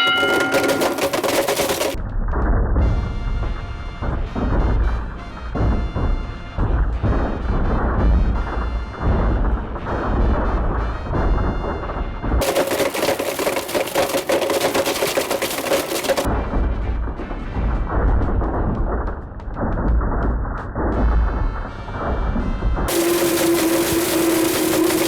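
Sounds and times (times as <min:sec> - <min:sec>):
blender grinding phones: 0:00.0 - 0:02.0, 0:12.4 - 0:16.3, 0:22.9 - 0:25.0
music: 0:00.5 - 0:12.4, 0:16.3 - 0:25.0
motor whine: 0:22.9 - 0:25.0.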